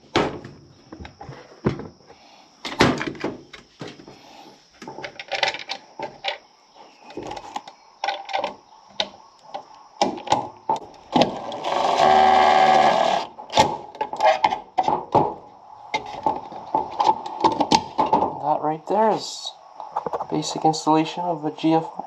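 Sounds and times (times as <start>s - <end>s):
cordless drill running: 11.4s - 13.3s.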